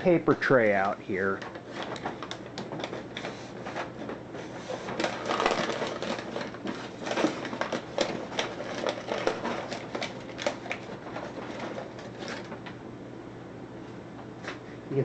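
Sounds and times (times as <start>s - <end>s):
crumpled paper crackling: 0.2s - 12.8s
plastic clicks and rattles: 4.9s - 12.8s.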